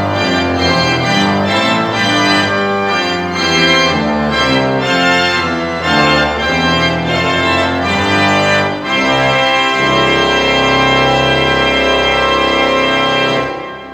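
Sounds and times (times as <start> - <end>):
organ playing: 0.0 - 13.9.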